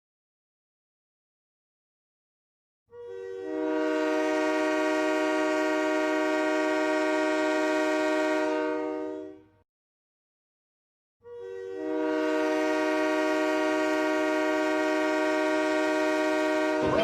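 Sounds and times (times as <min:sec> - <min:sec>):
goal horn blast: 0:03.0 - 0:09.4, 0:11.3 - 0:17.0.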